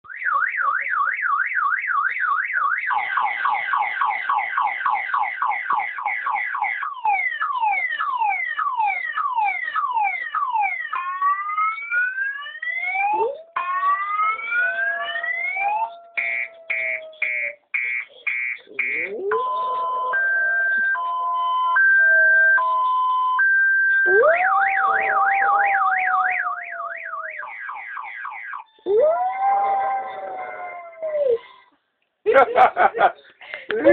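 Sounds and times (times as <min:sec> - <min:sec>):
car alarm siren: 0:00.1 - 0:31.6
short beeps: 0:16.2 - 0:26.6
low held tone: 0:18.8 - 0:23.3, 0:23.9 - 0:26.9.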